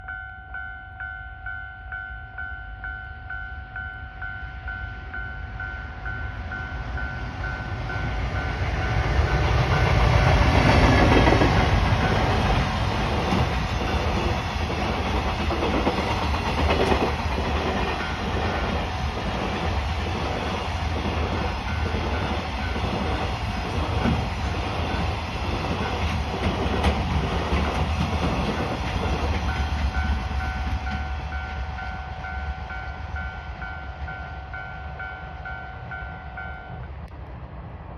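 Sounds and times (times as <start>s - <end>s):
level-crossing warning bell ringing: 0.0s - 27.7s, 28.3s - 37.0s
train rumble: 1.9s - 37.9s
wheels clacking over rail joints: 8.8s - 31.2s.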